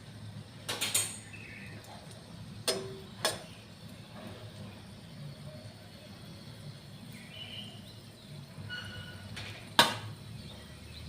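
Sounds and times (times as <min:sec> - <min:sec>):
faint bird chirps: 0:01.2 - 0:01.9, 0:07.1 - 0:09.3.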